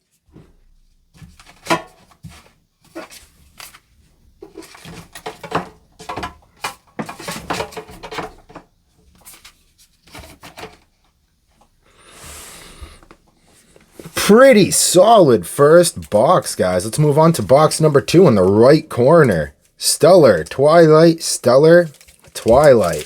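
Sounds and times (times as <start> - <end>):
cards and packaging rustling: 1.2 - 10.9, 13.7 - 23.0.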